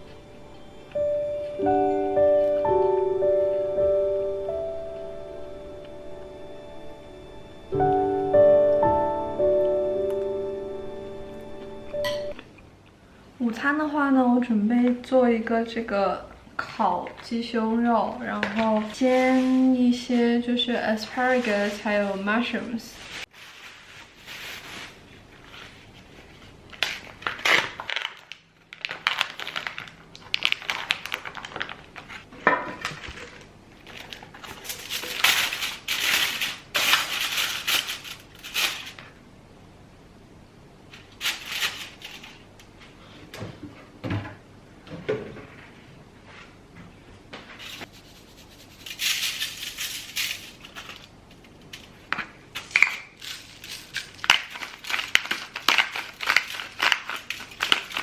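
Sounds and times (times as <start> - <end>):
utensils and dishes clinking: 11.9 - 12.5
ingredients rustling: 18.0 - 39.2, 40.9 - 42.9, 47.5 - 58.0.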